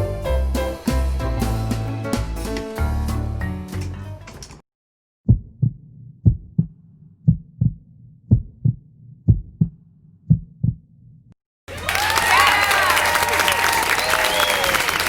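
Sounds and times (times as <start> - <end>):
heartbeat double thumps: 5.3 - 10.9.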